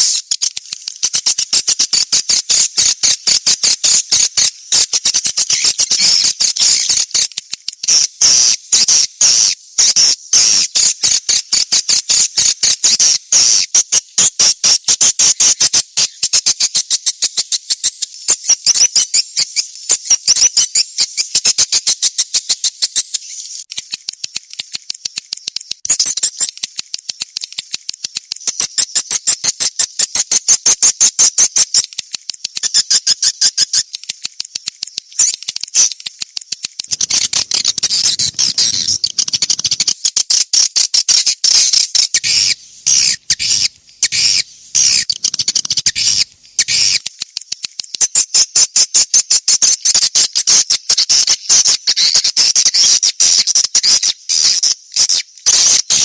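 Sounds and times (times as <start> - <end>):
high twittering bird chirps: 0.0 - 13.8, 36.7 - 47.0.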